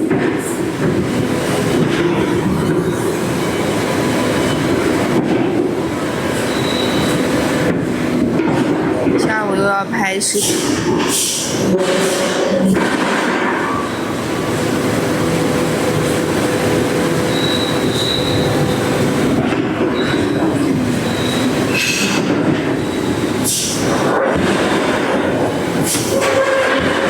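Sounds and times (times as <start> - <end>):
metalworking machinery clattering: 0.0 - 27.0
faint squealing tones: 6.3 - 7.3, 17.2 - 18.9.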